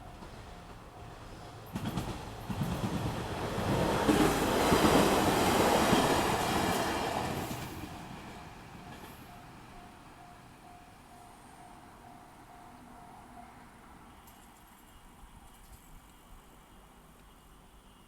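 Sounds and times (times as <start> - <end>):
train wheels clattering over rails: 0.1 - 9.3
crossing warning bell ringing: 8.3 - 14.0.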